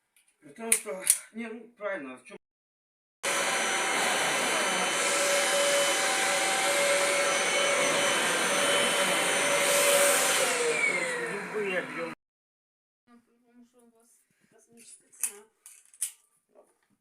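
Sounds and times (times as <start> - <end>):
vacuum cleaner motor running: 3.2 - 12.2.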